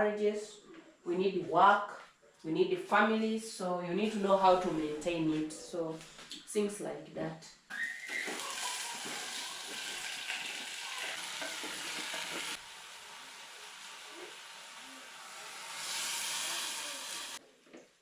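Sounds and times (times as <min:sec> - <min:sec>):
food sizzling in hot oil: 0:07.8 - 0:17.4.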